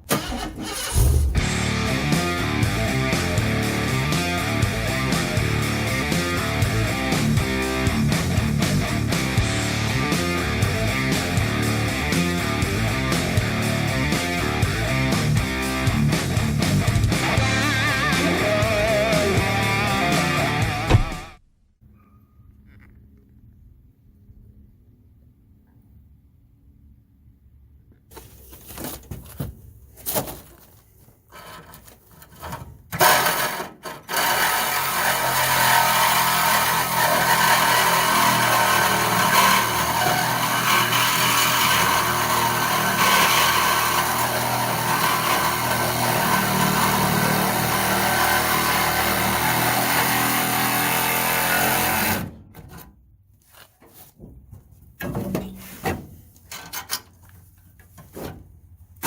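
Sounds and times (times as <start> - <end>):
power tool cutting steel: 0.1 - 21.2, 33.0 - 52.3.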